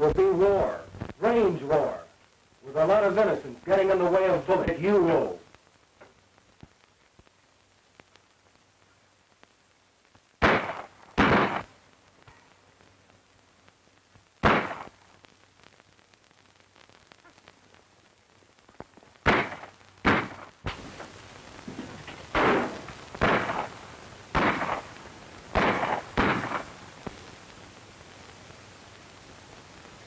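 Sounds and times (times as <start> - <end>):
gunshots with echo: 10.4 - 11.7, 14.4 - 14.9, 19.3 - 20.4, 22.4 - 23.7, 24.4 - 24.9, 25.6 - 26.7.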